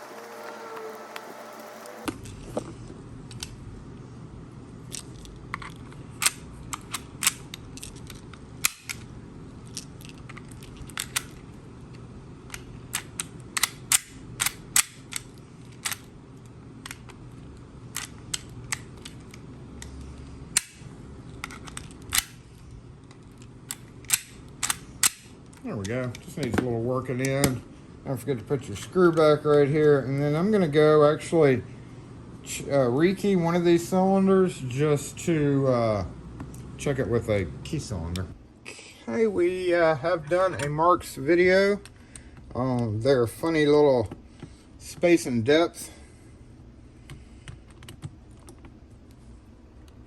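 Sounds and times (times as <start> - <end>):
steady low hum: 0.0 - 50.0
lock mechanism clicking: 12.5 - 16.1, 23.7 - 25.3.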